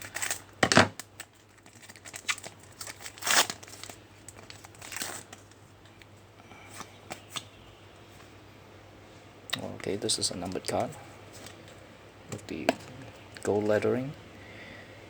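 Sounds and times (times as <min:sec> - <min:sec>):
card pack wrapper crinkling: 0:00.0 - 0:05.6.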